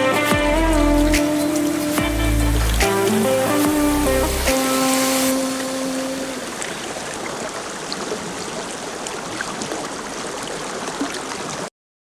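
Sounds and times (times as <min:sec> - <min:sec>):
held music notes: 0:00.0 - 0:06.7
running water rushing: 0:00.0 - 0:11.7.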